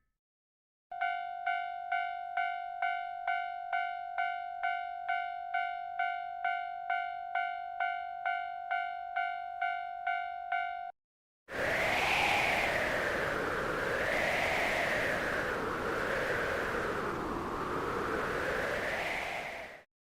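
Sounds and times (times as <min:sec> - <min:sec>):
railroad crossing warning bell ringing: 0:00.9 - 0:10.9.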